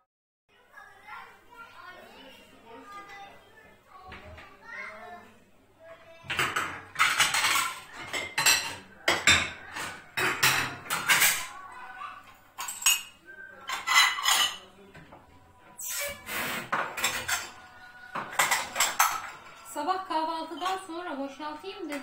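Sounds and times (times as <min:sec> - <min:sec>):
dishes and cutlery clinking: 0:06.2 - 0:15.4, 0:16.0 - 0:22.0
dish scraping: 0:06.3 - 0:11.6, 0:12.6 - 0:14.7, 0:15.8 - 0:19.8.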